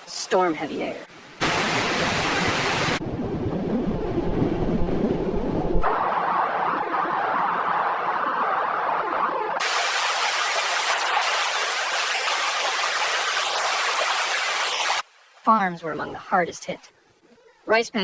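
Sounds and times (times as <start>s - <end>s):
rushing water: 0.8s - 3.0s, 5.8s - 15.5s.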